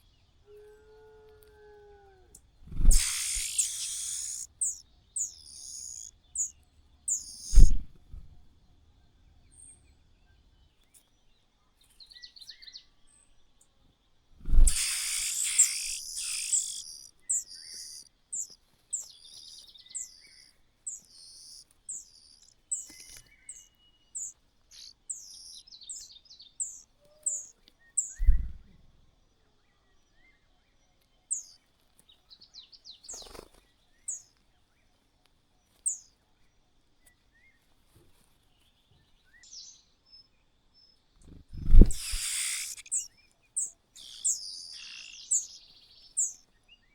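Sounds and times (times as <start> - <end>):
small bird chirping: 2.3 - 8.4, 11.8 - 28.8, 30.1 - 34.4, 35.6 - 36.2, 38.6 - 46.9.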